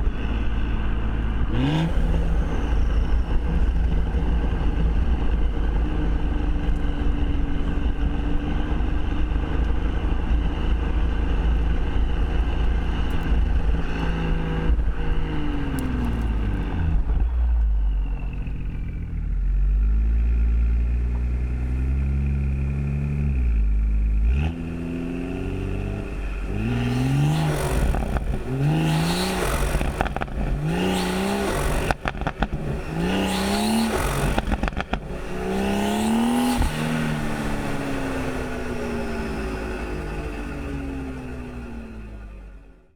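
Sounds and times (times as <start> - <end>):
exhaust pops crackling: 0.0 - 19.3, 25.7 - 38.2
car engine cruising and revving: 0.0 - 42.9.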